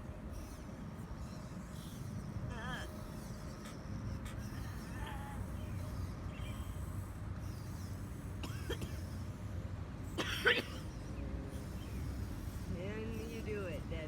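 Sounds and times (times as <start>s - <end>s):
person coughing: 8.4s - 9.1s, 10.2s - 10.9s.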